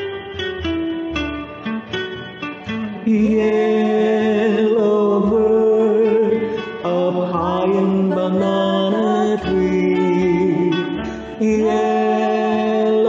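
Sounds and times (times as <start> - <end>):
acoustic guitar: 0.0 - 13.0
person singing slow melody: 2.9 - 13.0.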